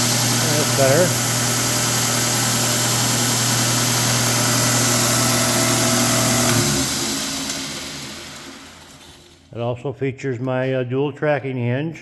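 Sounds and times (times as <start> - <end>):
belt grinder motor humming: 0.0 - 9.5.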